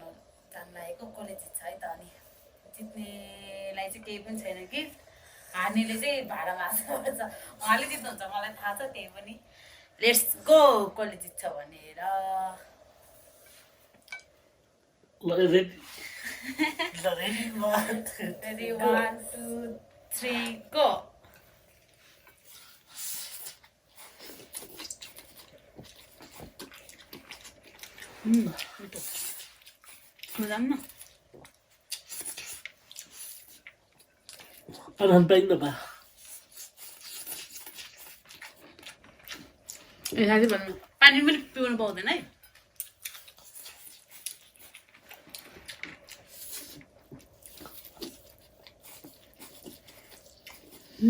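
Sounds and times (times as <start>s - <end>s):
people chewing noodles: 21.2s - 51.0s.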